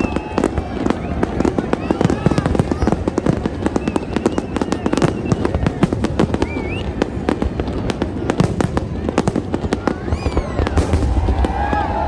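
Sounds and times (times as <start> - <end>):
rising firework whistle: 0.0 - 7.1, 9.7 - 12.0
fireworks cracking and banging: 0.0 - 12.0.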